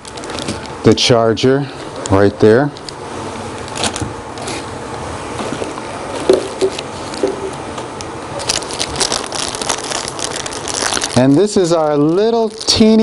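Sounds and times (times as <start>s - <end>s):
packaging crinkling: 0.0s - 0.8s, 3.6s - 4.6s, 8.4s - 13.0s
plastic packaging rustling: 0.0s - 0.8s, 3.6s - 4.7s, 5.4s - 7.5s, 8.4s - 13.0s.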